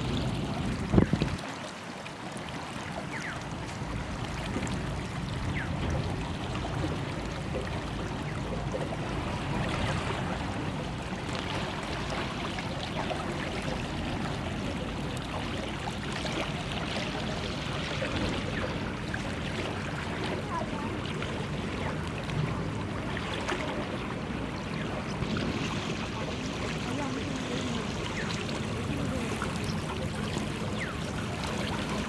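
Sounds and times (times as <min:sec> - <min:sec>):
river water flowing: 0:00.0 - 0:32.0
small splashes and trickles: 0:00.0 - 0:32.0.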